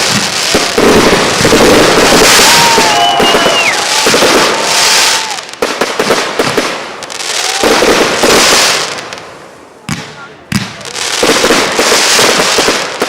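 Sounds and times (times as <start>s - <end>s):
fireworks crackling and popping: 0.0s - 13.0s
firework whistles: 0.9s - 5.6s.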